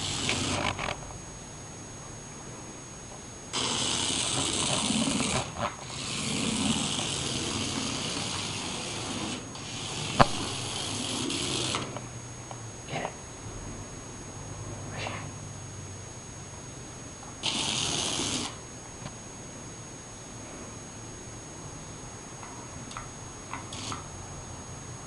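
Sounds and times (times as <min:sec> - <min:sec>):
toy electric motor whirring: 0:00.0 - 0:01.0, 0:03.5 - 0:12.1, 0:17.4 - 0:18.6, 0:23.5 - 0:24.1.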